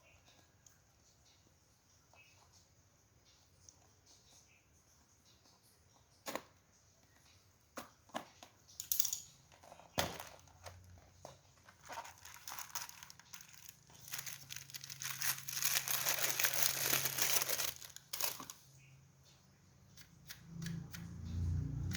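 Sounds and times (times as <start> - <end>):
packaging tearing and crinkling: 11.5 - 18.6.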